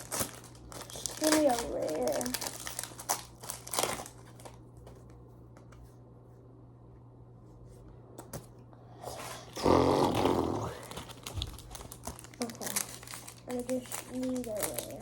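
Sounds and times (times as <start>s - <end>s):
trading cards rustling: 0.0s - 5.1s, 10.7s - 15.0s
low steady hum: 0.0s - 15.0s.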